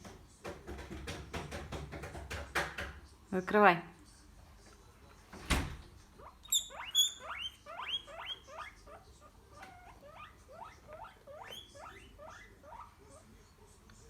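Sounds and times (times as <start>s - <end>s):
fridge door thump: 5.4s - 5.8s
guinea pig squealing: 6.0s - 13.4s.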